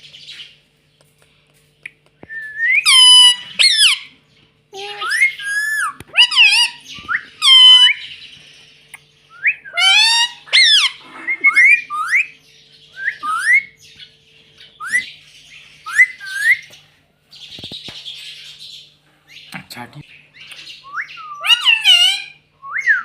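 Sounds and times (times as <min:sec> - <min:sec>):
parrot squawking and chirping: 0:02.8 - 0:08.4, 0:09.5 - 0:13.9, 0:14.6 - 0:16.7, 0:20.3 - 0:23.0.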